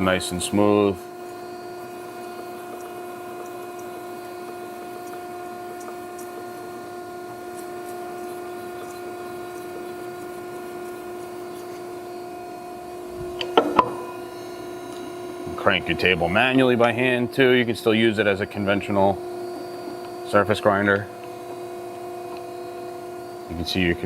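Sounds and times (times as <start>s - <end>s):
surface grinder humming: 0.0s - 21.0s.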